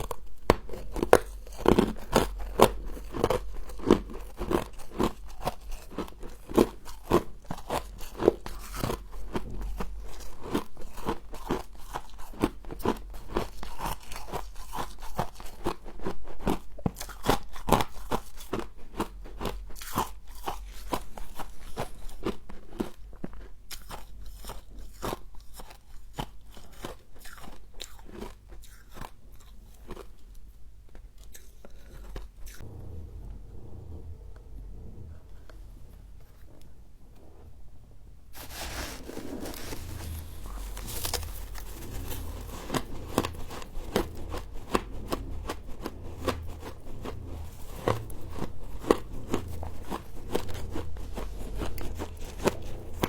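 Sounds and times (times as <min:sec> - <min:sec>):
frost being crunched: 0:38.4 - 0:43.6.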